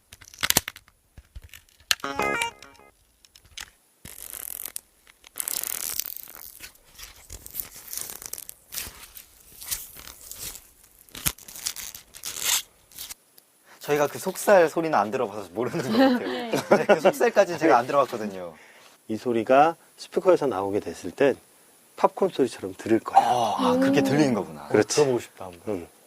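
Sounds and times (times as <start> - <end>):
crackling and snapping prop: 0.0 - 2.1, 3.0 - 13.2.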